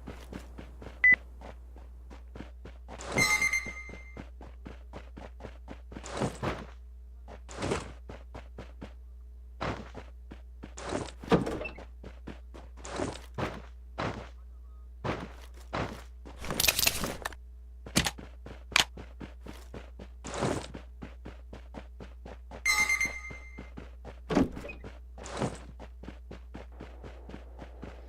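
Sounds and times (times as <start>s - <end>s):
low steady hum: 0.0s - 28.0s
thunks and clicks: 16.4s - 19.0s.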